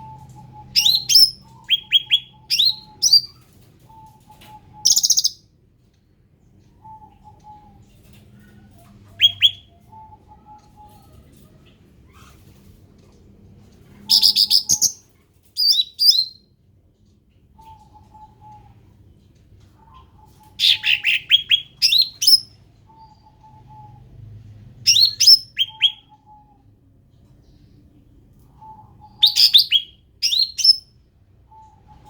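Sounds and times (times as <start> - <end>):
songbird chirping: 0.0 - 32.0.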